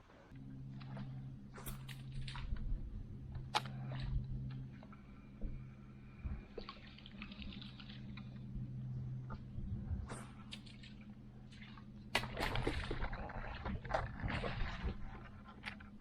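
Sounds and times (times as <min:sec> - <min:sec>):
steady low hum: 0:00.0 - 0:16.0
water splashing and dripping: 0:06.5 - 0:08.4, 0:10.1 - 0:15.8.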